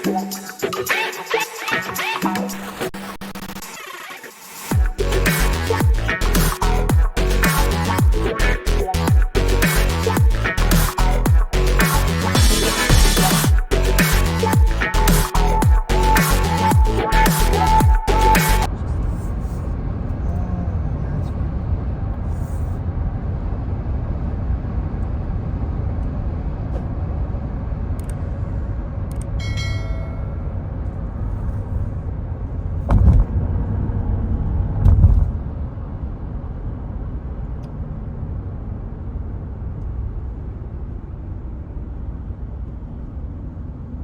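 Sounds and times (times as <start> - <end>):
loud low thumps: 9.1 - 18.7
road and engine rumble inside car: 18.6 - 44.0.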